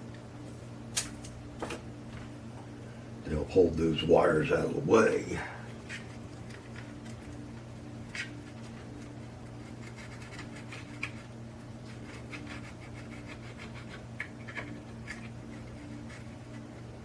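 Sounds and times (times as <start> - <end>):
steady electrical hum: 0.0 - 17.0
hands scratching and rubbing tape: 5.8 - 7.4, 8.0 - 16.9.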